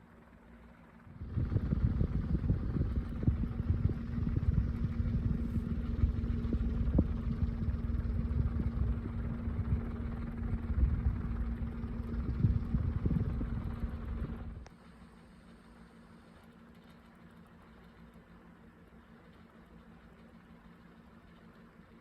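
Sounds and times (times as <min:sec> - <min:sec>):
ceiling fan motor humming: 0:00.5 - 0:16.3
low rumble: 0:00.8 - 0:14.7.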